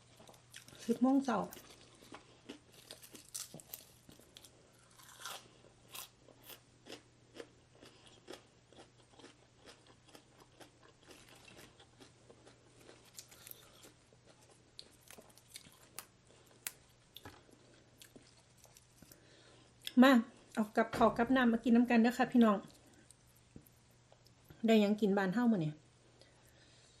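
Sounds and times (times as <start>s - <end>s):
person chewing and crunching: 0.0s - 20.0s.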